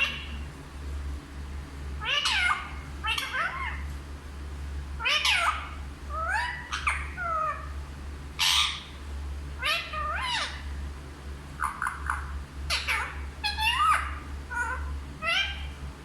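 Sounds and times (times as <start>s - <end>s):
parrot calling: 0.0s - 0.4s, 2.0s - 3.9s, 5.0s - 7.8s, 8.4s - 9.0s, 9.6s - 10.8s, 11.6s - 15.8s.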